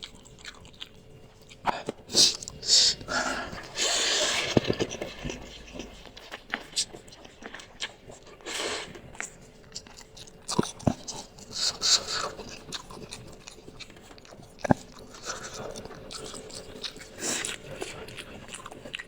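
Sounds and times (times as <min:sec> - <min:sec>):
wet chewing: 0:00.0 - 0:19.0
hissy intakes of breath: 0:02.1 - 0:05.1, 0:08.4 - 0:09.0.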